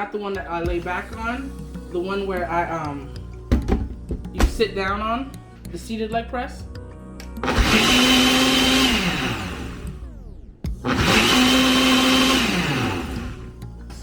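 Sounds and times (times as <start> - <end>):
blender motor whining: 7.4 - 13.7.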